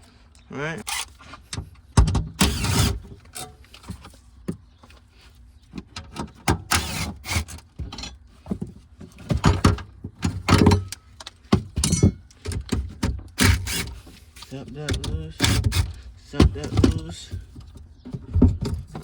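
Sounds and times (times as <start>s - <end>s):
tools clicking and knocking: 9.3s - 19.0s.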